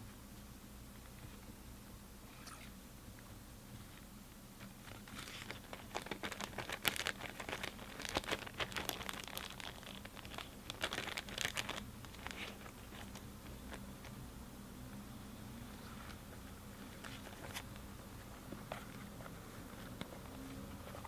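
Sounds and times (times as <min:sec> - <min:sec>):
plastic bags crinkling: 0:04.8 - 0:14.2.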